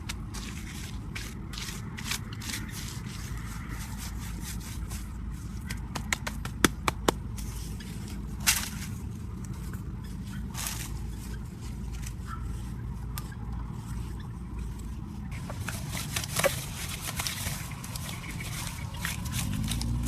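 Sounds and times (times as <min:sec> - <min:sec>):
scraping: 0:00.0 - 0:20.0
steady low rumble: 0:00.0 - 0:20.0.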